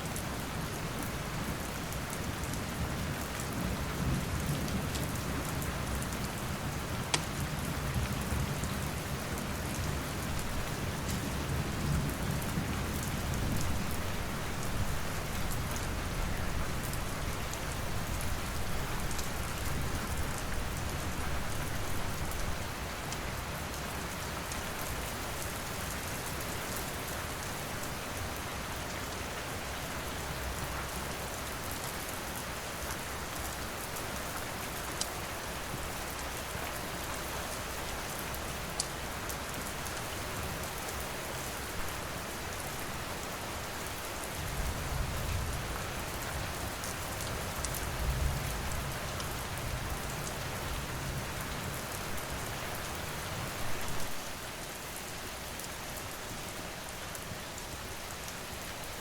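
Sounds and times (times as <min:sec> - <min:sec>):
rain pattering: 0:00.0 - 0:59.0
fire crackling and popping: 0:07.1 - 0:07.4.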